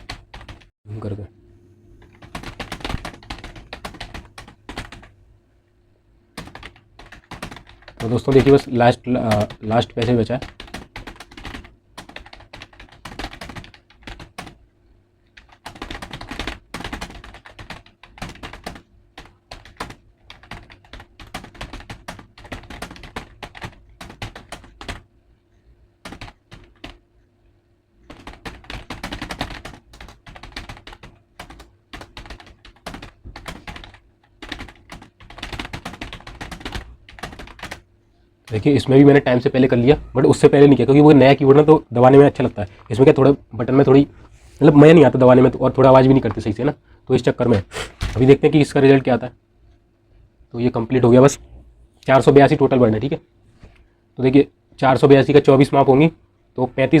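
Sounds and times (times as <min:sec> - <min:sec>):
fast typing on computer keyboard: 0:00.0 - 0:00.7, 0:02.0 - 0:05.1, 0:06.3 - 0:25.1, 0:26.0 - 0:27.0, 0:28.0 - 0:38.9.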